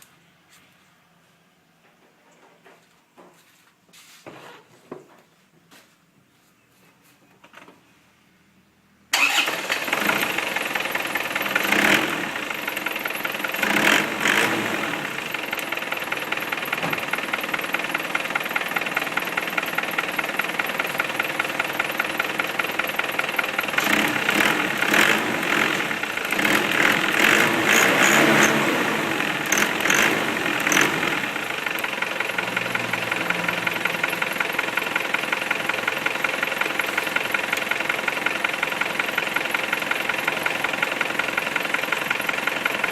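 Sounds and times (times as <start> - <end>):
diesel engine idling: 9.2 - 42.9.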